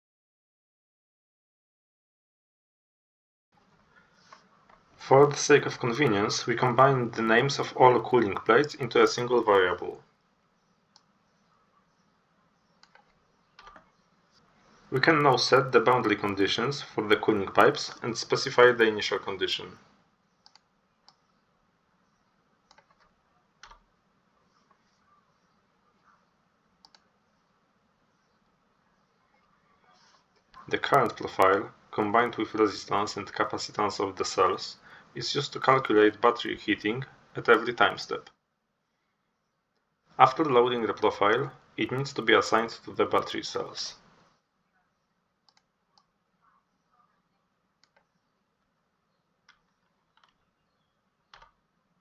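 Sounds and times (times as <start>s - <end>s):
faint clicks: 12.7s - 18.0s, 19.8s - 21.4s, 22.2s - 23.9s, 26.8s - 27.1s, 45.4s - 46.1s, 47.8s - 48.7s, 49.4s - 50.4s, 51.3s - 51.6s
computer keys or mouse clicks: 12.8s - 13.9s, 20.4s - 21.2s, 22.7s - 23.8s, 26.8s - 27.1s, 45.5s - 46.1s, 47.8s - 48.1s, 49.4s - 50.4s, 51.3s - 51.6s.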